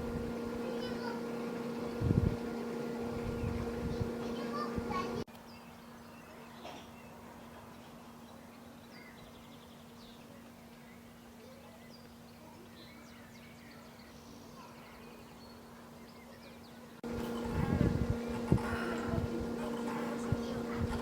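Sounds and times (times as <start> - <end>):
low steady hum: 0.0 - 6.4, 16.9 - 21.0
songbirds chirping and trilling: 0.0 - 21.0.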